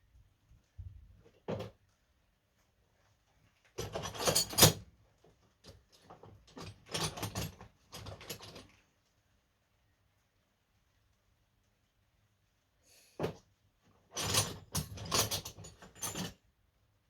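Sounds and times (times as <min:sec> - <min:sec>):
metal tools clattering: 0:14.2 - 0:16.4.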